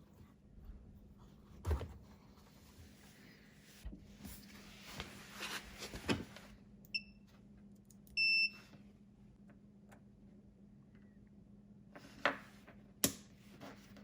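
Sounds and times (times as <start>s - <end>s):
multimeter beeping: 8.1s - 8.6s.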